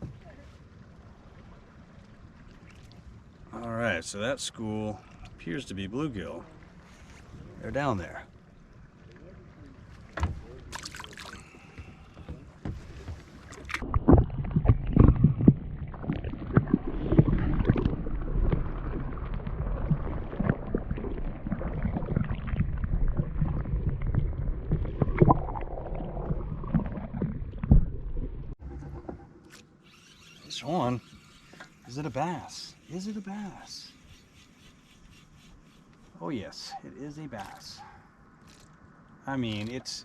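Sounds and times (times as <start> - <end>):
water sloshing against hull: 0.0 - 40.0
knocks and rubbing on boat: 10.1 - 10.5, 11.7 - 13.5.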